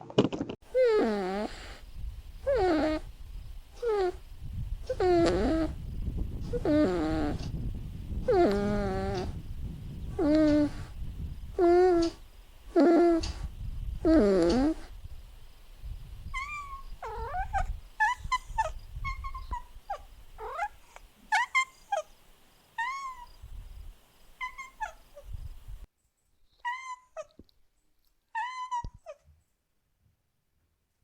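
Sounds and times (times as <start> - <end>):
kittens mewing: 0.7 - 1.8, 2.4 - 3.1, 3.8 - 4.2, 4.8 - 5.8, 6.4 - 7.6, 8.2 - 9.4, 10.1 - 15.0, 16.3 - 22.1, 22.8 - 23.3, 24.4 - 25.2.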